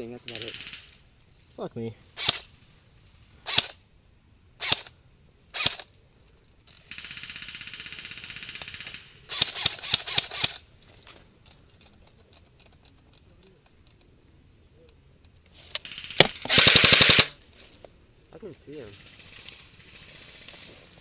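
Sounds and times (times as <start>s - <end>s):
airsoft gun shots: 2.2s - 2.5s, 3.5s - 3.8s, 4.6s - 4.9s, 15.9s - 17.4s.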